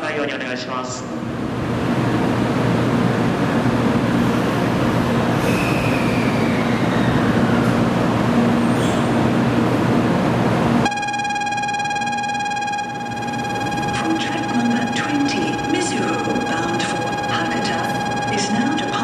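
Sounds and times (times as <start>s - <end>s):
train rushing and rumbling: 1.2s - 10.9s
faint falling whine: 4.9s - 9.6s, 10.8s - 19.0s.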